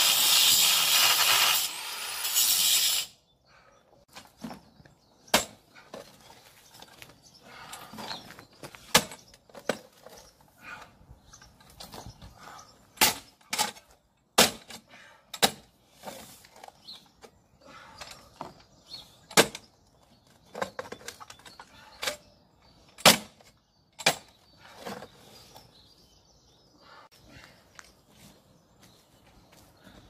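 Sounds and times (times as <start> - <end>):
tool scraping ground: 0.0 - 3.2.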